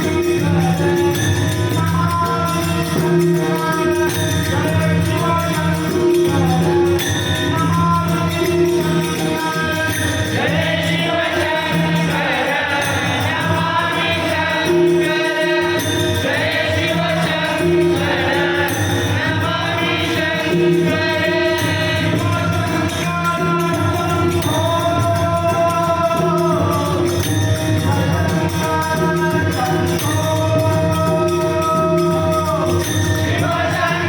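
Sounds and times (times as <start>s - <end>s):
jingling hand percussion: 0.0s - 34.0s
steady held tones: 7.0s - 25.0s
voices singing chorus: 10.3s - 24.6s, 33.2s - 34.0s.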